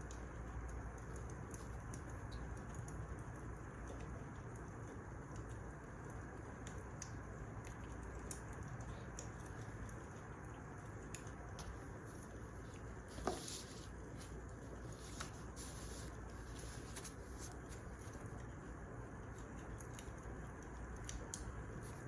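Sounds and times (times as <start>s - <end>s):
wood fire crackling: 7.8s - 22.0s.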